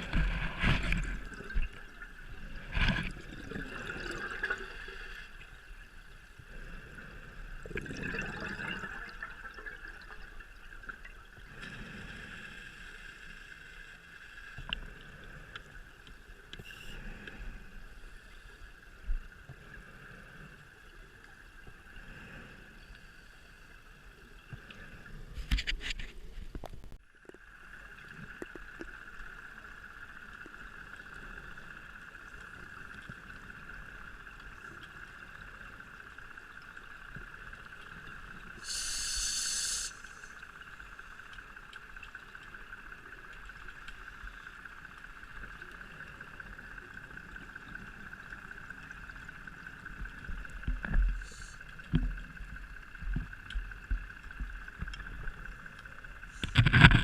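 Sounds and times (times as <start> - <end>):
bubbles gurgling: 0.0 - 5.0, 7.6 - 10.5
steady underwater hum: 0.0 - 57.0
breathing through a regulator: 11.4 - 13.6, 16.6 - 18.9, 21.9 - 23.7, 38.6 - 40.6, 50.8 - 51.9.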